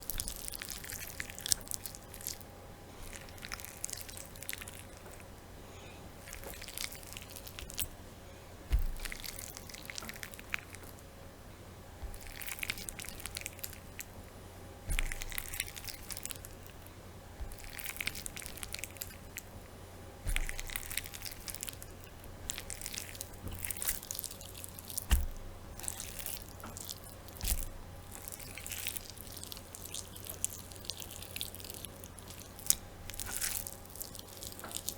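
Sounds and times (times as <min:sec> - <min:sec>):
wet squelching of kneaded meat: 0:00.0 - 0:11.2, 0:11.8 - 0:34.9
soft thumps of meat pressed: 0:08.6 - 0:10.9, 0:12.0 - 0:13.4, 0:14.9 - 0:16.3, 0:17.4 - 0:18.3, 0:20.3 - 0:21.1, 0:24.9 - 0:28.4.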